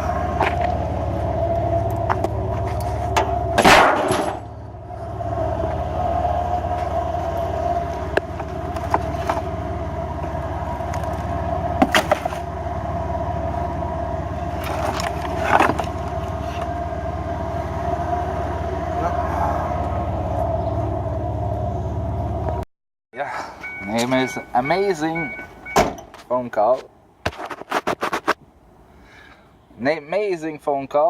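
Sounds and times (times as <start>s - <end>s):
truck engine and road rumble: 0.0s - 31.0s
knocks and rattles: 2.0s - 4.6s.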